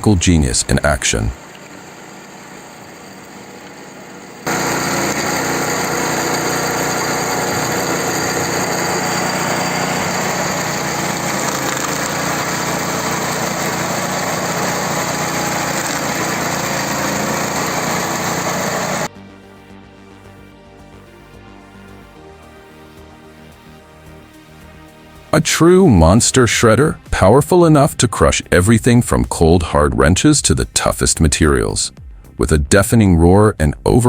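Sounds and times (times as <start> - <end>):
loud machine noise: 0.0 - 19.1
quiet machine hum: 0.1 - 19.1.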